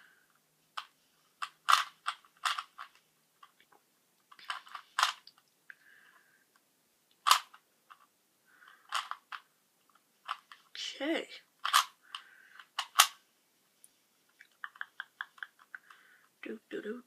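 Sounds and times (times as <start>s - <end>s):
plastic puzzle cube clicking: 0.7s - 5.5s, 6.5s - 10.7s, 11.6s - 13.2s.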